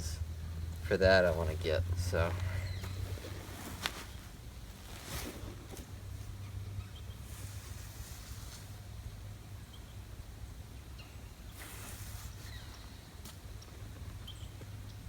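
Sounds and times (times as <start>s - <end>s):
body shifting in damp sand: 2.0s - 6.4s.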